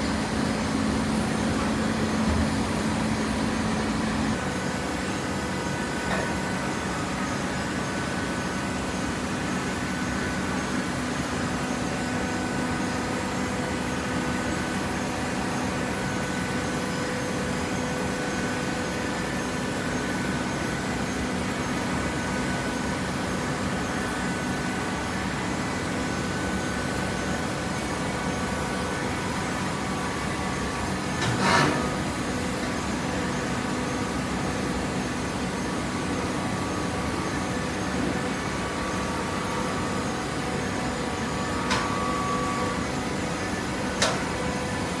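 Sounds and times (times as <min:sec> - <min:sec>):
hydraulic pump motor hum: 0:00.0 - 0:08.5, 0:26.2 - 0:45.0.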